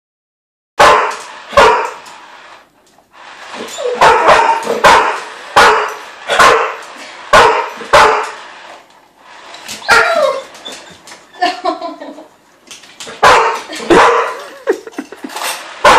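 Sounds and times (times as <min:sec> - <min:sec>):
dog barking: 0:00.8 - 0:02.0, 0:03.8 - 0:08.4, 0:13.2 - 0:14.6
dog yelping: 0:03.6 - 0:06.7, 0:09.8 - 0:11.5.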